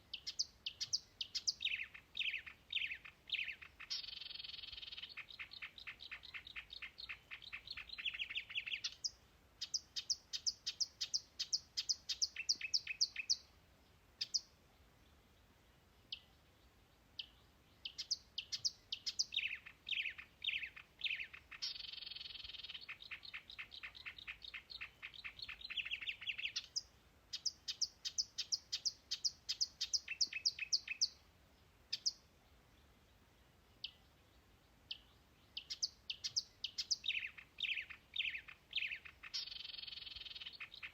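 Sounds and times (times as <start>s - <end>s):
songbird trilling: 0.1s - 13.5s, 14.2s - 14.5s, 17.2s - 31.2s, 31.9s - 32.3s, 34.9s - 40.9s.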